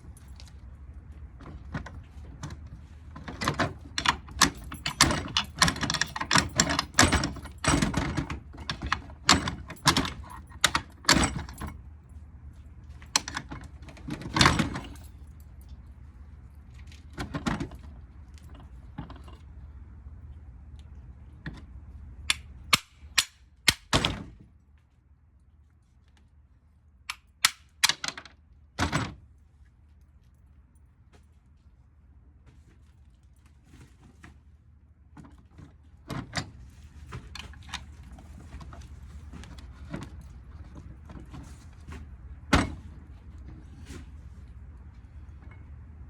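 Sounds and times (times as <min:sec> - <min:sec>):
metal parts clinking and knocking: 0:03.4 - 0:11.8, 0:27.1 - 0:28.3.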